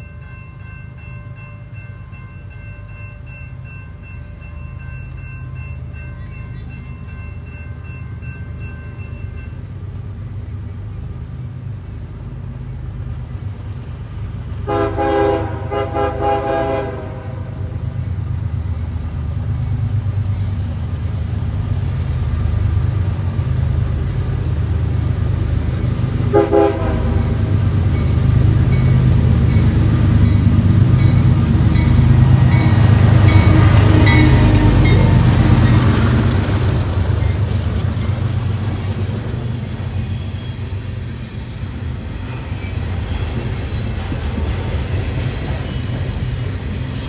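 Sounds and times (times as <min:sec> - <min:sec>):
locomotive engine rumble: 0:05.0 - 0:46.9
train horn blast: 0:14.6 - 0:17.9, 0:26.3 - 0:27.7, 0:31.8 - 0:35.3.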